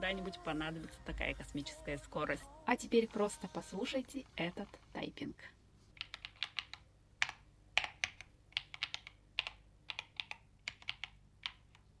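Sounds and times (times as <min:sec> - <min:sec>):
mechanical keyboard typing: 0:06.0 - 0:12.0.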